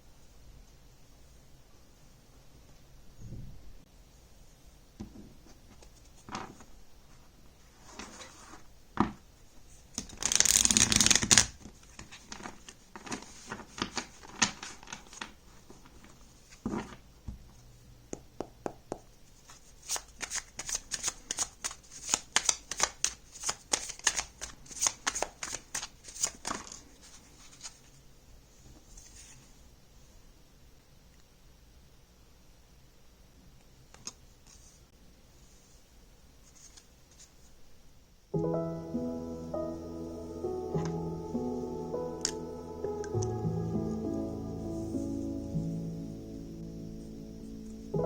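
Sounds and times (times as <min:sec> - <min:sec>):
cards shuffling: 0:09.9 - 0:17.0, 0:19.4 - 0:27.9, 0:36.4 - 0:37.4
cards sliding and tapping: 0:19.5 - 0:27.8.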